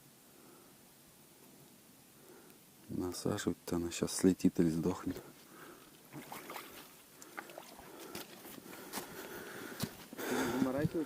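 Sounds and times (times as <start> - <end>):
faint rustling: 4.9 - 11.0.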